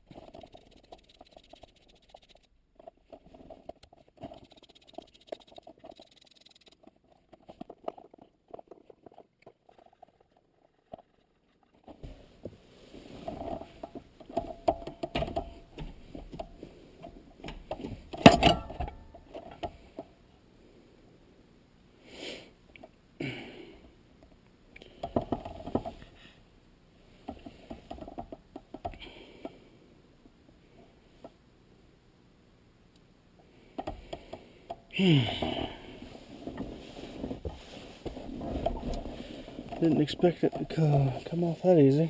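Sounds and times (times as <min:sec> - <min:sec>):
metallic clinks and rattles: 0:00.0 - 0:12.0.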